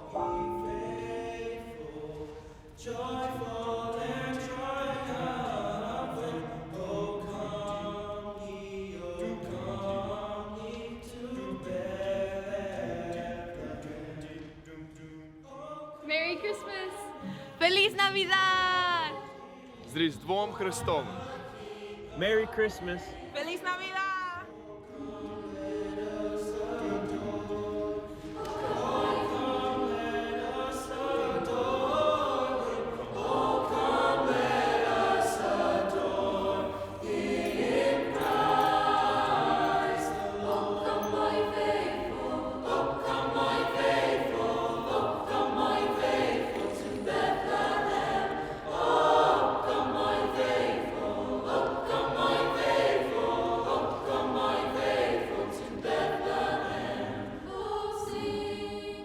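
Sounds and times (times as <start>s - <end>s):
choir singing: 0.0s - 59.0s.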